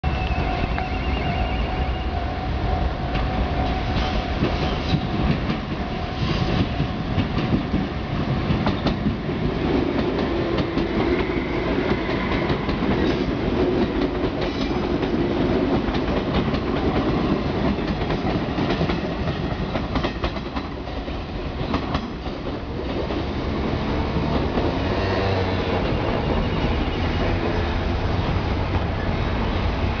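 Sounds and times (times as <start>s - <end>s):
train wheels clattering: 3.1s - 23.3s.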